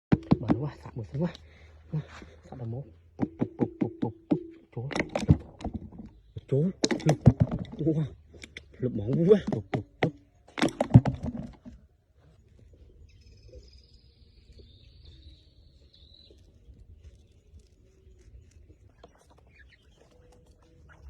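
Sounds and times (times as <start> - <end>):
faint bird calls: 12.2 - 21.0.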